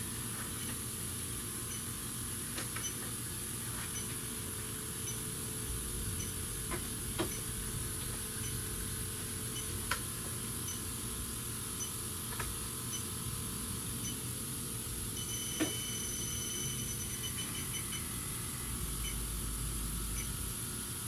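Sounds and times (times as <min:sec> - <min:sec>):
steady high whine: 0:03.6 - 0:20.8
leak detector beeping: 0:06.2 - 0:06.4, 0:09.5 - 0:09.8, 0:10.6 - 0:10.9, 0:11.8 - 0:12.0, 0:15.1 - 0:18.1, 0:19.0 - 0:19.2.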